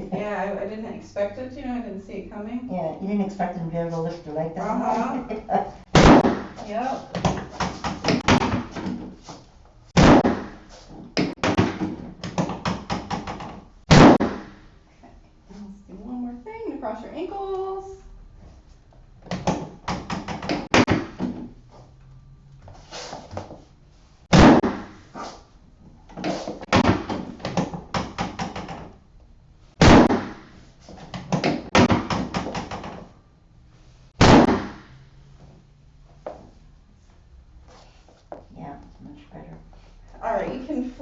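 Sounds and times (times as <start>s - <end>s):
loud thuds of table dropping: 10.0s - 10.6s, 11.2s - 14.6s, 19.3s - 21.5s, 24.3s - 25.0s, 29.8s - 30.5s, 31.2s - 33.1s, 34.2s - 34.9s.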